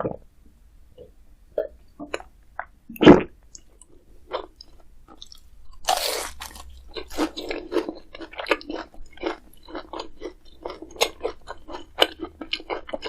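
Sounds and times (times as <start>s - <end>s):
chewing crunchy food: 3.6s - 13.0s.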